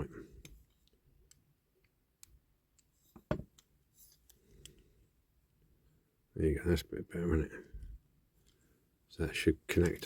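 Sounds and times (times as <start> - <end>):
knock: 3.3 - 3.5.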